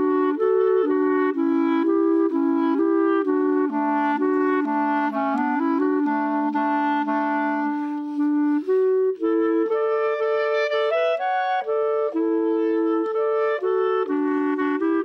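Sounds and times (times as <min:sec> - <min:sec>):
clarinet duet: 0:00.0 - 0:15.0.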